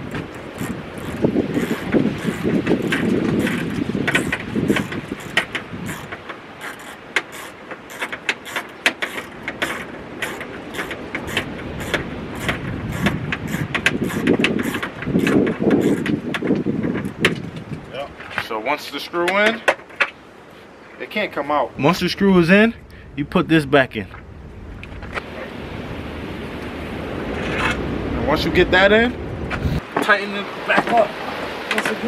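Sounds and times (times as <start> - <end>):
screwdriver clicking and scraping metal: 0.0 - 16.2
low rumble: 22.1 - 29.8.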